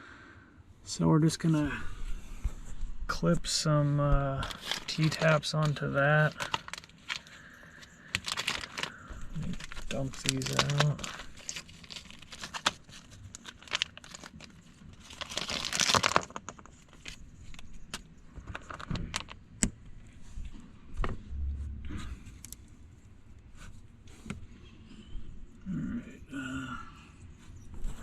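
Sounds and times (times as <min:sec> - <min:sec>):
packaging crinkling: 0:04.4 - 0:19.4
plastic connectors clicking and rattling: 0:08.1 - 0:14.5, 0:15.1 - 0:19.7.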